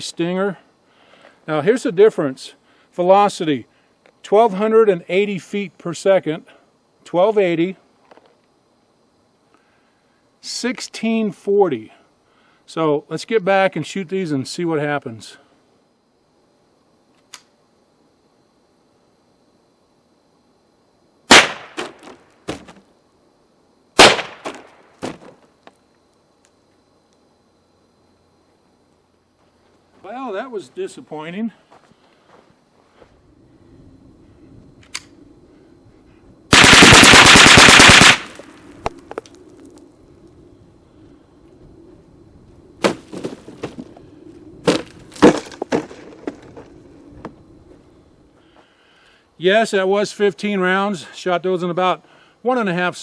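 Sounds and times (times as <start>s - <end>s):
faint steady hum: 0.0s - 53.0s
rifle shots: 21.3s - 22.0s, 24.0s - 24.8s, 36.5s - 38.6s.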